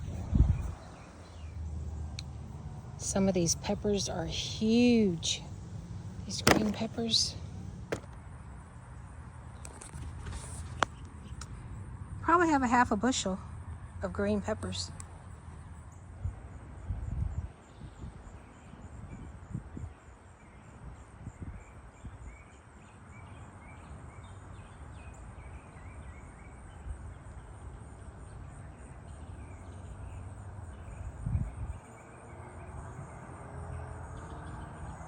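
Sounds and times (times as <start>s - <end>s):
wind rumble on microphone: 0.0s - 4.9s, 16.1s - 22.6s, 29.7s - 32.1s
loud thump: 6.4s - 7.2s, 7.9s - 8.2s.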